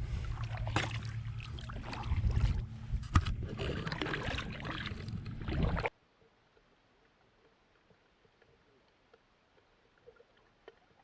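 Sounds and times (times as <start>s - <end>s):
steady low rumble: 0.0s - 5.9s
paddle strokes splashing water: 0.0s - 6.0s.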